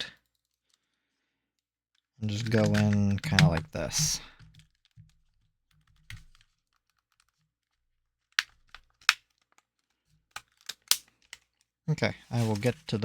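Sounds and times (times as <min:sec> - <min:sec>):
plastic and metal parts clicking: 0:02.2 - 0:11.7.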